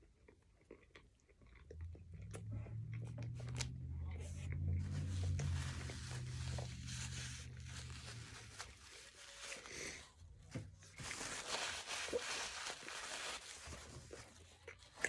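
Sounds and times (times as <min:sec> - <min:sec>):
low steady hum: 0:00.0 - 0:15.0
paper rustling and crinkling: 0:04.8 - 0:15.0.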